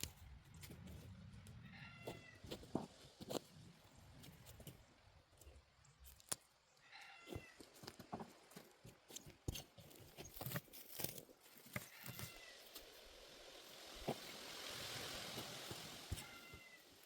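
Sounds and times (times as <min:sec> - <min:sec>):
weeds being pulled by hand: 0:09.1 - 0:17.0.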